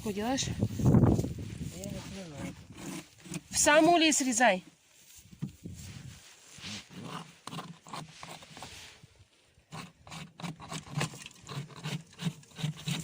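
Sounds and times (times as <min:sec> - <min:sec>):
light knocks and scrapes on wood: 0:05.1 - 0:05.9.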